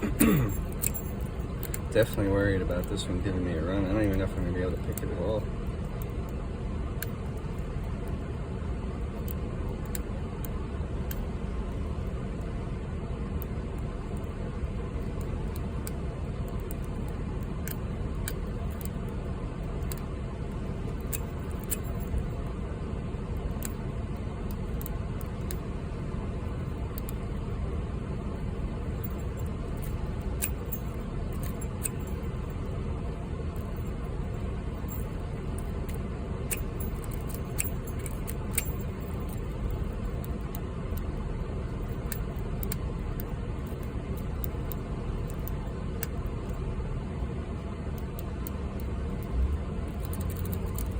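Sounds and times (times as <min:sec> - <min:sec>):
steady low rumble: 0:00.0 - 0:50.9
lock pick clicking in padlock: 0:00.6 - 0:01.9, 0:21.0 - 0:22.2, 0:29.1 - 0:32.3, 0:34.8 - 0:41.1, 0:49.9 - 0:50.9.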